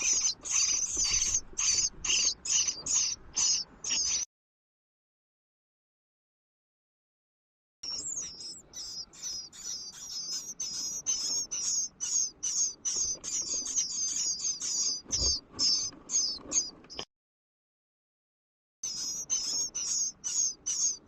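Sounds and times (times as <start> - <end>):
nestlings begging chirps: 0.0 - 4.3, 7.8 - 17.0, 18.8 - 21.0.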